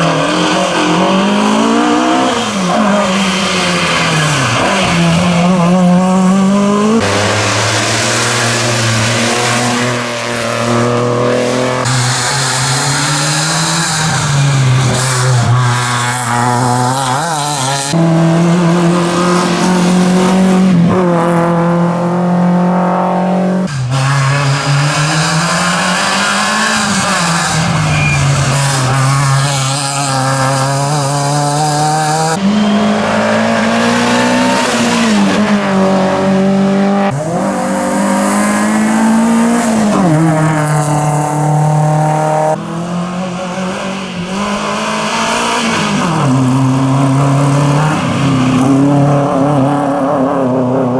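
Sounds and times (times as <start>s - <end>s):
rally car engines revving: 0.0s - 50.9s.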